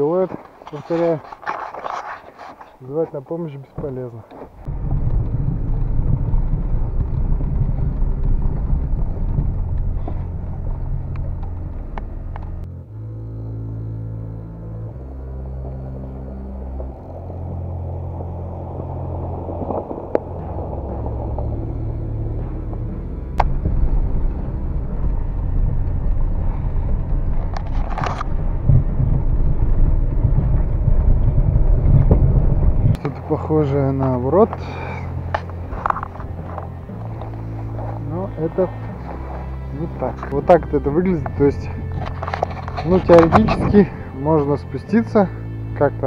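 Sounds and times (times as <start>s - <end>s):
car engine humming: 3.7s - 46.0s.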